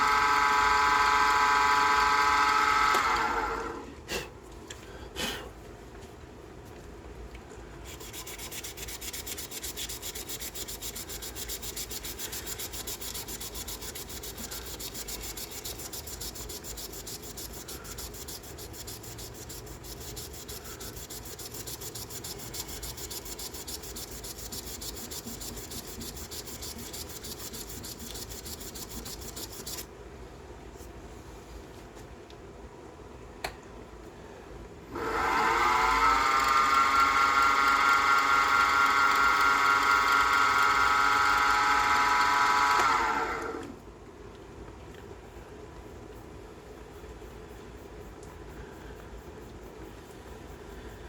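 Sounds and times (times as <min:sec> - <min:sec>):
lathe motor humming: 0:00.0 - 0:03.8, 0:34.9 - 0:43.7
sandpaper scratching on wood: 0:07.9 - 0:29.8.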